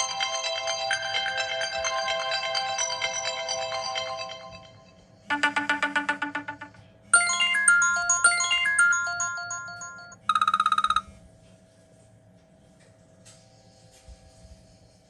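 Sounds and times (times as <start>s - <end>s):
fast pulsing electronic trill: 0.0s - 11.0s
phone ringtone melody: 0.0s - 11.1s.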